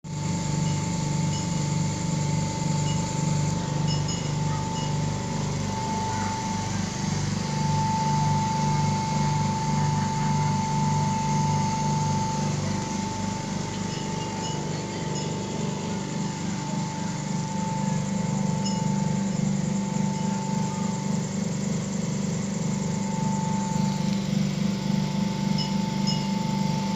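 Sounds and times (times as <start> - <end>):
steady whine: 0.0 - 26.9
faint light chink: 0.6 - 6.3, 12.4 - 17.2, 25.3 - 26.9.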